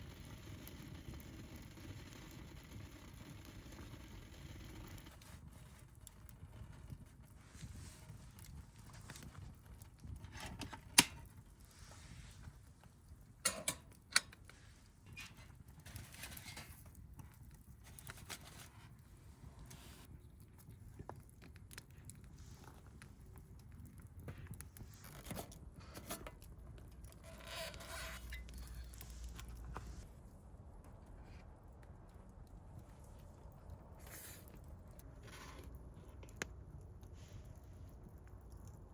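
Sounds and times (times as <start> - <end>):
cooking gear clicks and knocks: 9.1 - 11.5, 13.4 - 16.9.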